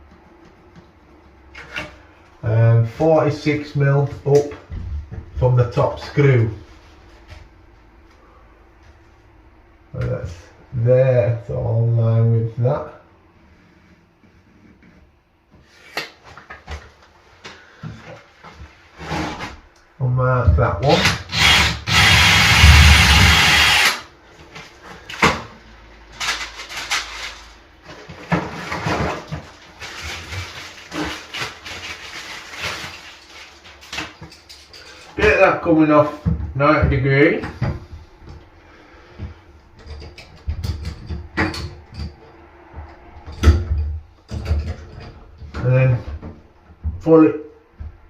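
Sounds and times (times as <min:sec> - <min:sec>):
power drill boring: 0:20.9 - 0:24.1
knocks and handling sounds: 0:24.4 - 0:35.4.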